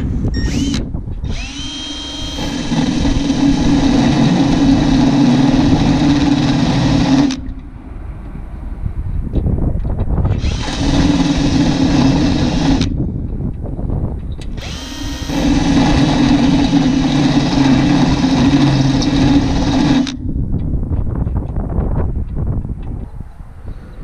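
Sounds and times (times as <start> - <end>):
handheld power tool running: 0.4 - 7.5, 10.3 - 13.0, 14.4 - 20.2.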